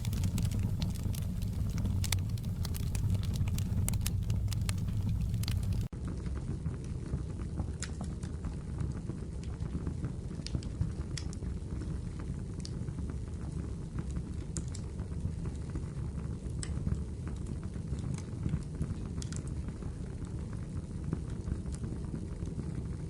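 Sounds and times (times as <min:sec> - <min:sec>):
wood fire crackling: 0:00.0 - 0:05.9.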